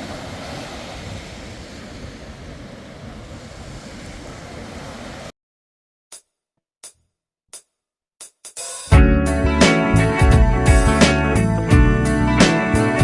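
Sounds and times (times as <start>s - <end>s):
wind buffeting microphone: 0.0s - 5.3s.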